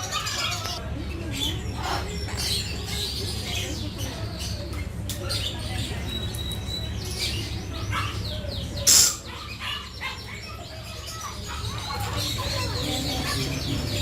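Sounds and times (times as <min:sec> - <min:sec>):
caged birds chirping: 0:00.0 - 0:14.0
bird shriek: 0:08.8 - 0:09.3.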